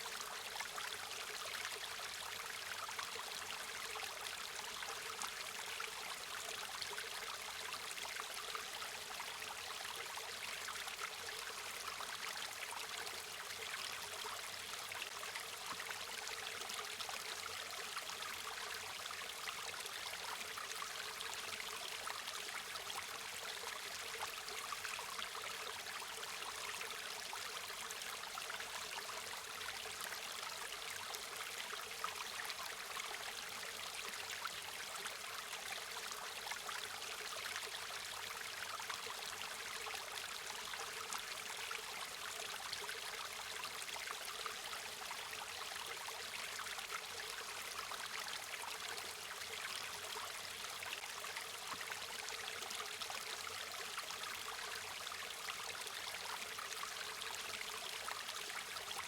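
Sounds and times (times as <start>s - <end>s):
stream flowing over rocks: 0.0s - 59.0s.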